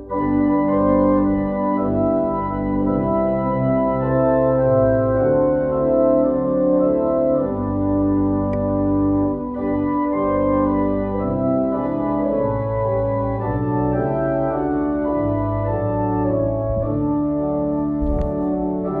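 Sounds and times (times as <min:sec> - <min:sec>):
organ playing a hymn: 0:00.0 - 0:19.0.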